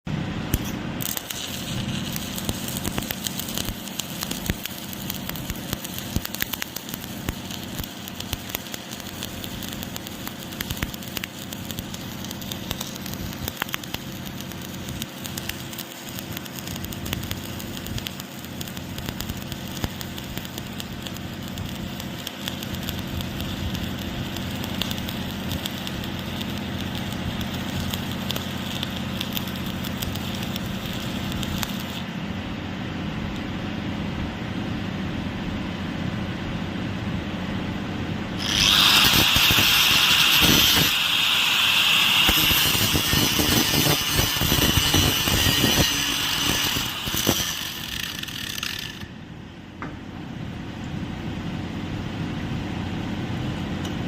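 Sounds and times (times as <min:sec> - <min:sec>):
low machine hum: 0:00.1 - 0:38.7
welding arc crackling and sizzling: 0:00.4 - 0:32.2, 0:38.4 - 0:49.2.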